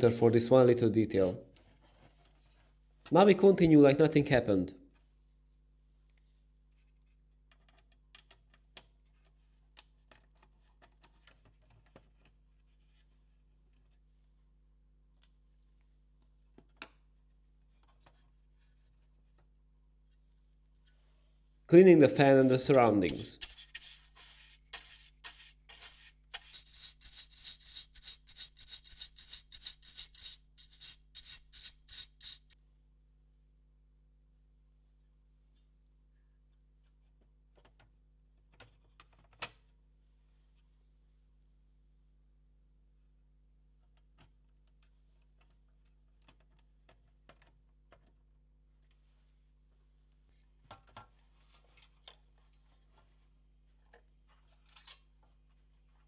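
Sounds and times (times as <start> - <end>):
cleaning tool rubbing fan: 22.2 - 32.6
small parts clicking and tapping: 26.4 - 32.6.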